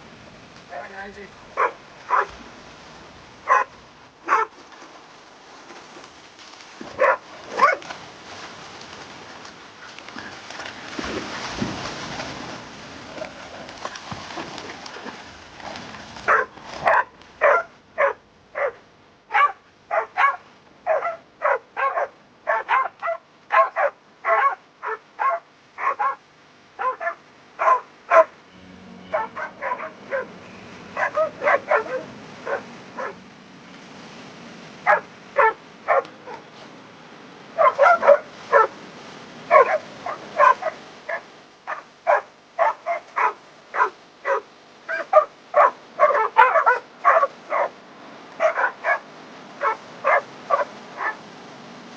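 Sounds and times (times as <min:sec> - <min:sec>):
dog barking: 0:01.6 - 0:02.4, 0:03.4 - 0:04.6, 0:06.9 - 0:07.8, 0:16.3 - 0:26.2, 0:26.8 - 0:28.4, 0:29.1 - 0:33.2, 0:34.8 - 0:36.6, 0:37.6 - 0:38.8, 0:39.5 - 0:47.8, 0:48.4 - 0:51.2.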